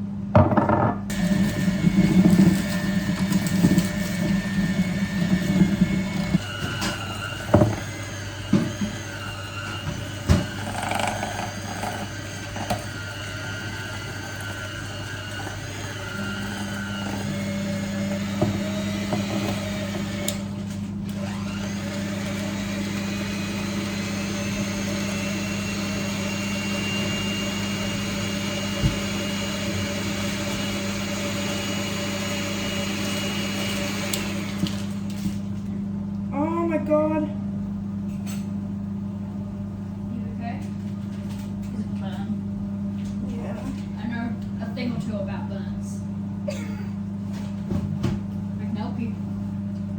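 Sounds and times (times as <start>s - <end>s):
kitchen appliance motor humming: 0.6s - 37.2s.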